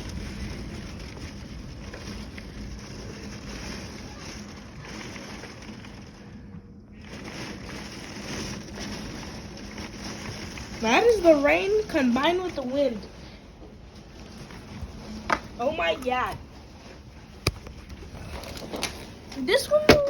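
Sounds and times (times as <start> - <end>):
heavy rain and wind: 0.0 - 6.4.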